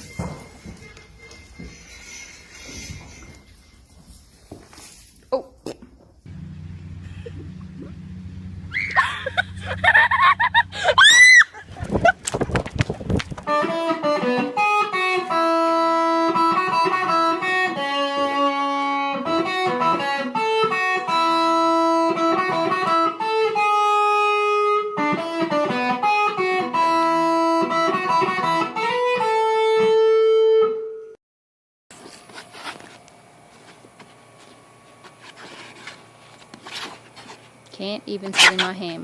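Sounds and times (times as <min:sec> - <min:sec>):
plucked guitar melody: 0:13.5 - 0:31.1.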